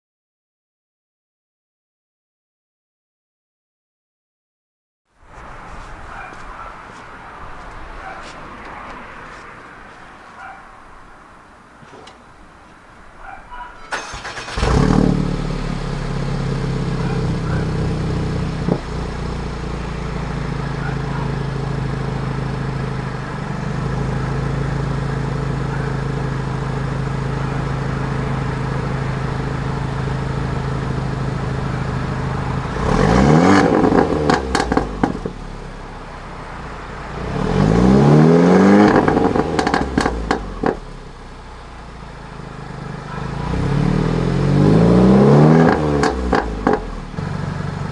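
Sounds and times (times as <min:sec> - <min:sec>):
car engine idling: 0:09.3 - 0:37.7, 0:38.8 - 0:47.9
engine revving: 0:13.9 - 0:35.7, 0:37.0 - 0:41.0, 0:42.6 - 0:47.9
exhaust crackles and pops: 0:33.5 - 0:35.4, 0:38.8 - 0:41.0, 0:45.6 - 0:47.2.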